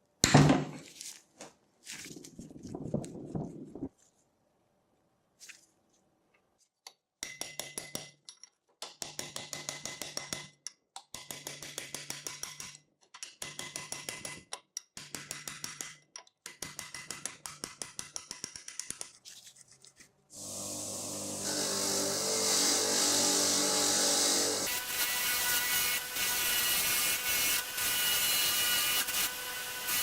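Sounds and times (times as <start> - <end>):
small power tool running in bursts: 20.4 - 25.1.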